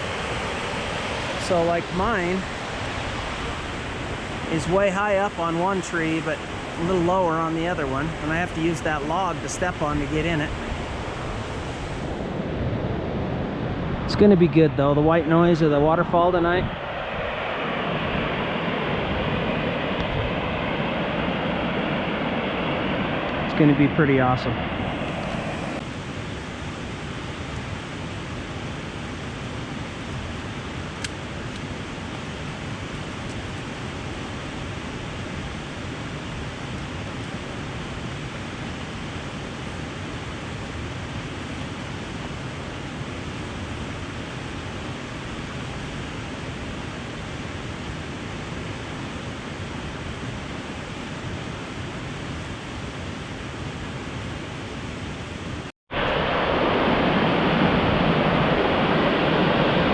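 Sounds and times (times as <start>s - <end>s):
waterfall rushing: 0.0s - 12.0s, 55.9s - 59.9s.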